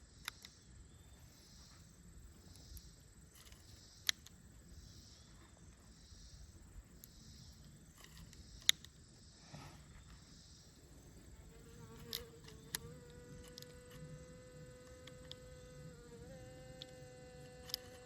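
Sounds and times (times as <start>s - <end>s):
sharp clicks: 2.5s - 4.4s, 8.0s - 9.0s, 11.9s - 18.0s
fly buzzing: 11.0s - 18.0s.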